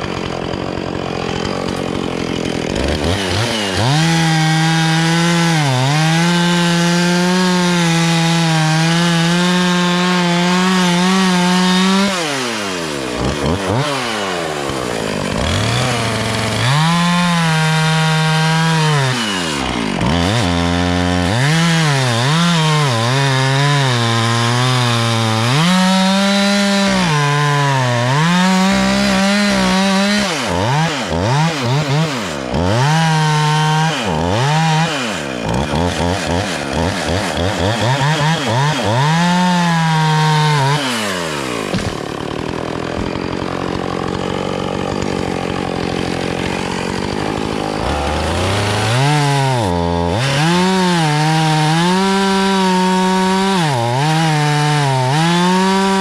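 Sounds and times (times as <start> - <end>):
chainsaw engine revving: 0.0 - 56.0.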